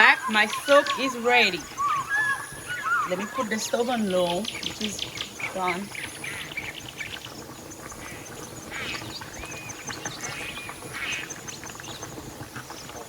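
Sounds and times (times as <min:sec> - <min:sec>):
faint steady background noise: 0:00.0 - 0:13.0.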